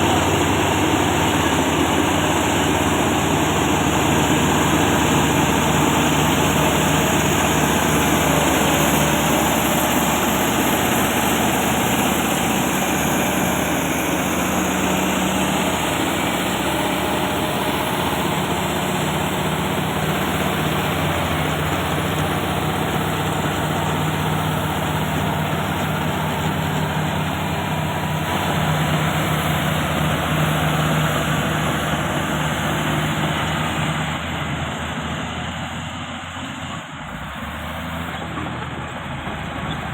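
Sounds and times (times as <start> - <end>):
bulldozer diesel engine droning: 0.0 - 39.9.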